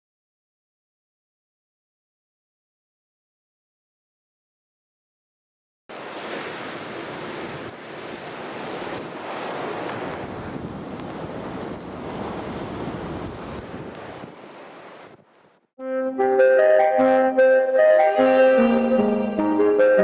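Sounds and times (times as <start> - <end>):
ocean surf breaking: 5.9 - 15.6
wind buffeting microphone: 6.3 - 15.3.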